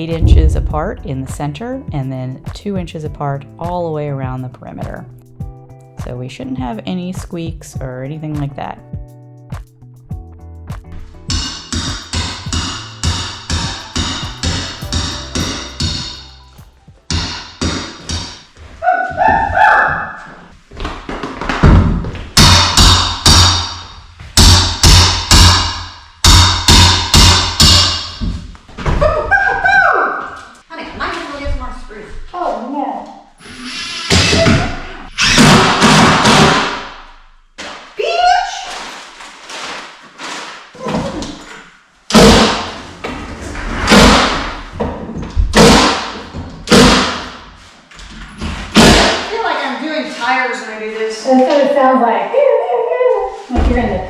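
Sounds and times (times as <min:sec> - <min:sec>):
heavy drum hits: 0:00.0 - 0:01.4, 0:11.3 - 0:17.5
steady bass tone: 0:00.0 - 0:03.6, 0:12.0 - 0:17.0.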